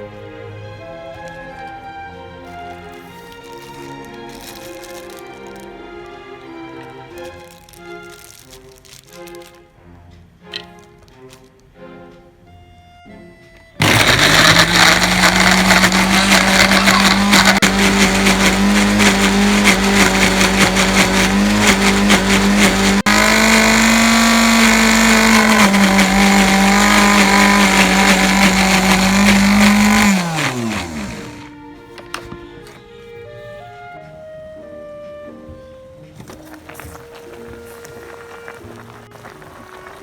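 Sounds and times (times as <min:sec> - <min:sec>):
blender motor running: 0:13.8 - 0:31.5
blender spinning down: 0:13.8 - 0:31.5.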